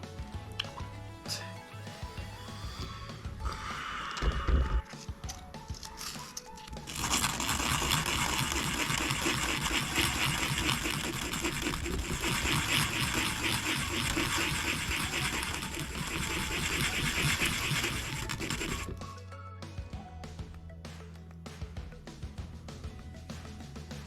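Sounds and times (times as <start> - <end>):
sandpaper rasping: 6.9 - 18.9.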